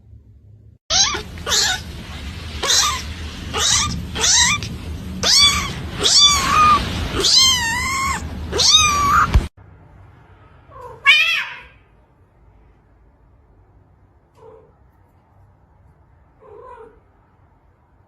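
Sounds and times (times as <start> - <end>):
cat meowing: 0.9 - 9.5, 10.7 - 11.8.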